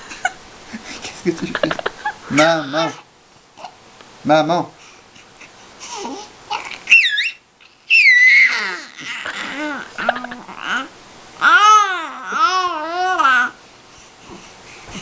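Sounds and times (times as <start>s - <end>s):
baby babbling: 5.8s - 13.6s
baby squealing: 6.0s - 13.5s.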